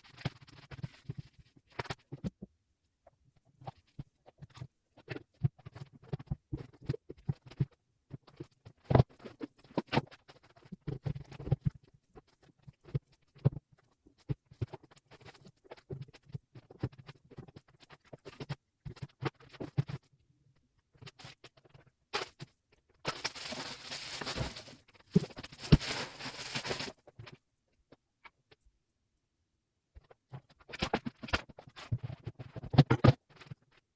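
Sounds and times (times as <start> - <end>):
knocks and clatters of handling: 23.1 - 27.0.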